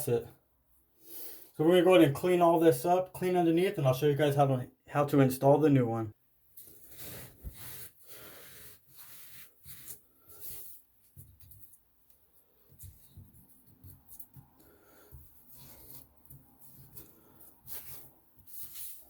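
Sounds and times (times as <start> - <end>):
hands scrubbing sink: 12.6 - 19.0.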